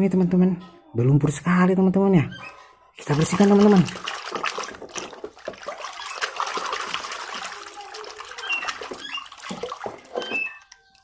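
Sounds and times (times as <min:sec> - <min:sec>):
water splashing and sloshing: 0:03.0 - 0:11.0.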